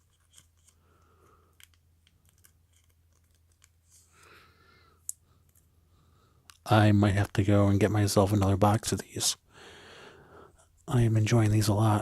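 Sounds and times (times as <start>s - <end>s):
cards rustling: 0.0s - 4.4s.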